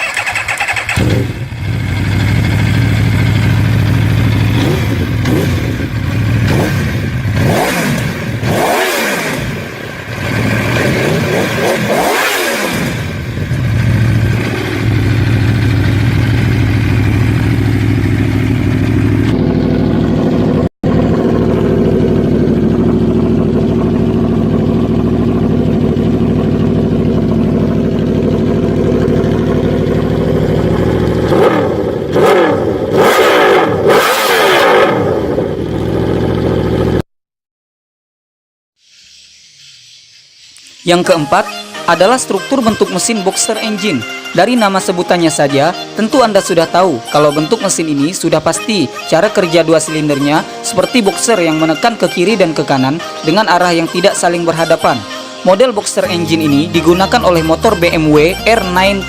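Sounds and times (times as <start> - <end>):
motorcycle engine idling and revving: 0.0 - 37.1, 49.2 - 59.0.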